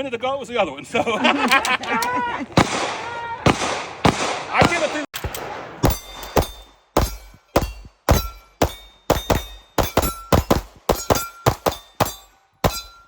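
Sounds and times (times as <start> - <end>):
pistol shots: 2.6 - 13.0.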